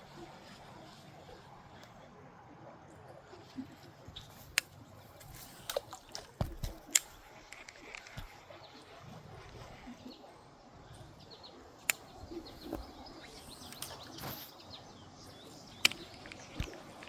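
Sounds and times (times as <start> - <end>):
birds chirping: 3.2 - 17.0
sharp loud clicks: 15.8 - 17.0.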